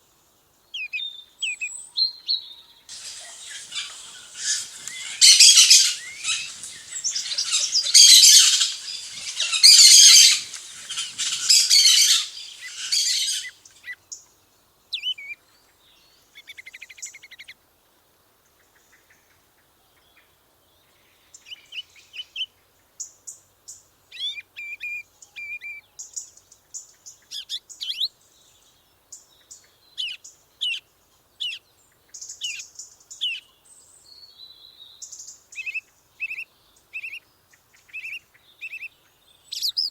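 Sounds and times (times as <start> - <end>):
songbirds singing: 0.8 - 14.2, 27.1 - 39.9.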